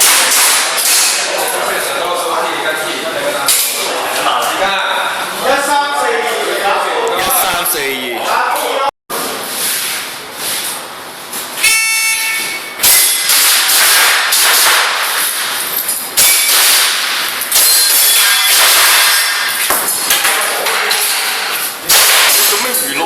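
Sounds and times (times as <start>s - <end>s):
airsoft pistol shots: 12.8s - 15.2s, 21.9s - 22.6s.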